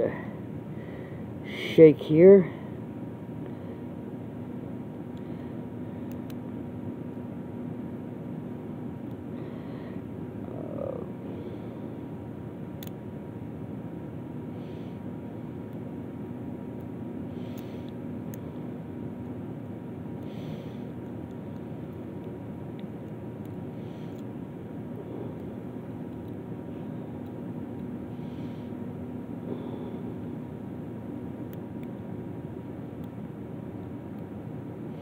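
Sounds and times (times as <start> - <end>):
background hum and drone: 0.0 - 35.0
soft breath: 0.1 - 1.4, 5.2 - 6.1, 9.3 - 12.1, 20.2 - 21.0, 28.1 - 28.8, 29.4 - 30.4.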